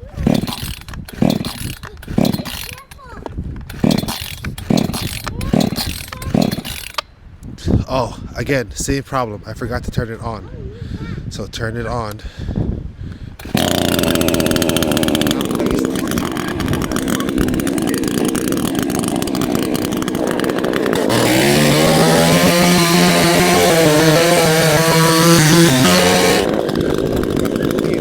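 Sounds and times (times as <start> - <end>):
chainsaw running: 0.0 - 7.1, 13.4 - 28.0.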